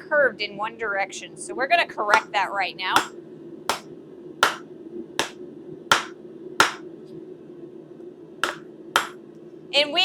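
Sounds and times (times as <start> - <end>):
mallet striking steel bar: 4.4 - 4.6, 5.2 - 6.8, 8.4 - 9.2.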